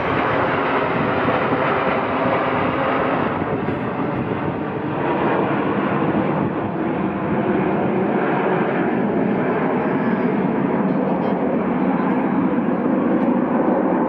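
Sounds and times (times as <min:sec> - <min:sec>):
jet engines in flight: 0:00.0 - 0:14.0.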